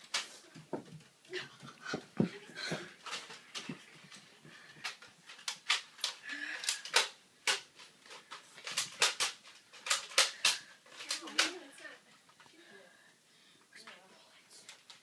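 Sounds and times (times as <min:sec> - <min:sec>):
toy blaster clicks and knocks: 0:04.8 - 0:11.7.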